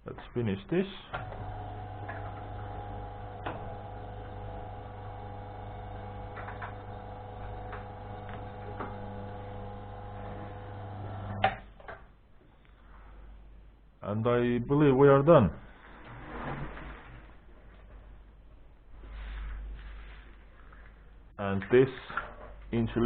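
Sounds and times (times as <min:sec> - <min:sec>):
wire stripping machine running: 0:01.1 - 0:11.6.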